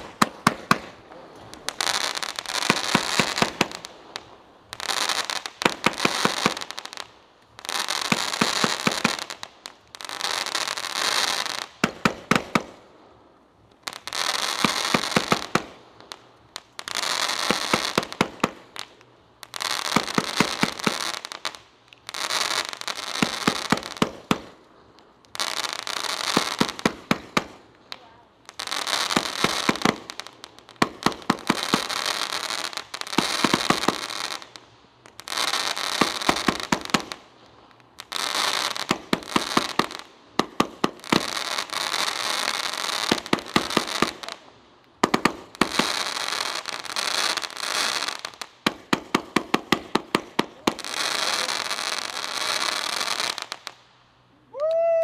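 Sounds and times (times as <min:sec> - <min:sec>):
firework pops: 0:00.0 - 0:06.8, 0:11.7 - 0:12.8, 0:23.1 - 0:24.6, 0:26.3 - 0:30.1, 0:35.2 - 0:37.2, 0:38.0 - 0:41.4, 0:43.0 - 0:46.0, 0:47.8 - 0:50.8
firework crackling hiss: 0:00.0 - 0:54.9.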